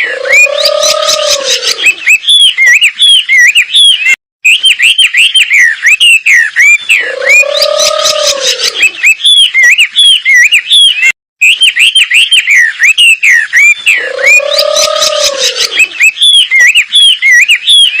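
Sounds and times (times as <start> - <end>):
chirped bird whistles: 0.0 - 18.0.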